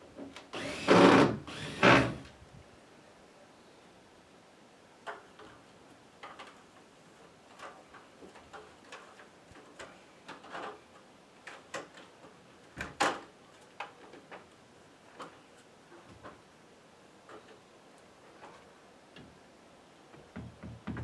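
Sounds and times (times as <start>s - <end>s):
light clicks and knocks: 17.2s - 19.4s.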